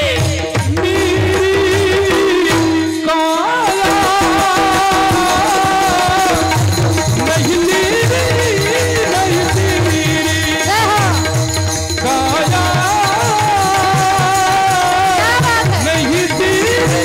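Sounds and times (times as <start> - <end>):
hand drums: 0.0 - 17.0
person singing: 7.2 - 11.3, 12.0 - 17.0.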